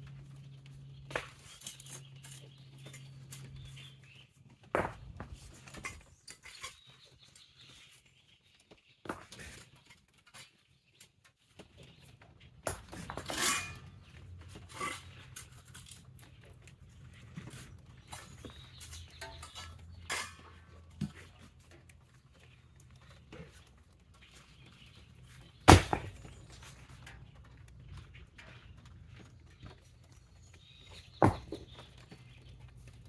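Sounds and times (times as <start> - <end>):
rake scraping wet sand and stones: 12.9 - 16.2, 17.4 - 21.3.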